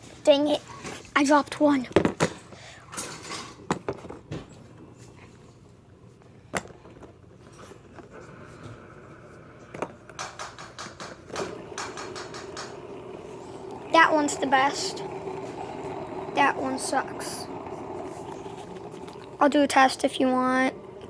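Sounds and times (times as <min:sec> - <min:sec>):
fidget spinner whirring: 0:07.5 - 0:21.0
rapid clicking: 0:10.1 - 0:19.4.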